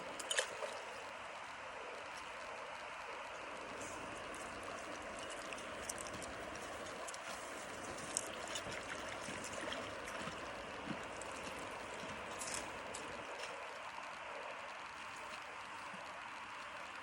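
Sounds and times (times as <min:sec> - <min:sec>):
small splashes: 0:00.0 - 0:01.1, 0:03.7 - 0:13.8
creek water over rocks: 0:00.0 - 0:17.0.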